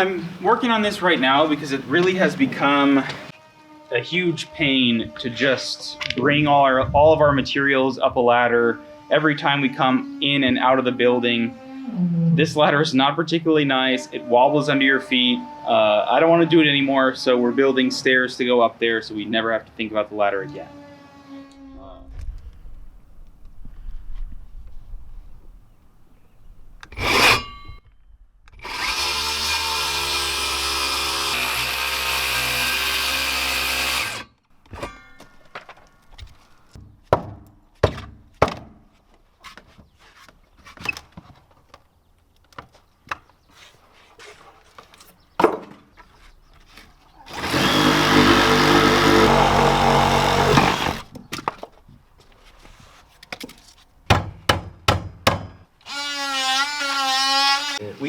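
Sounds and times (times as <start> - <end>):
power saw cutting wood: 0.0 - 6.3, 11.2 - 11.9, 14.1 - 17.9, 26.9 - 27.5, 28.5 - 34.4, 47.3 - 51.1, 55.8 - 58.0
wood knocks: 45.4 - 45.9.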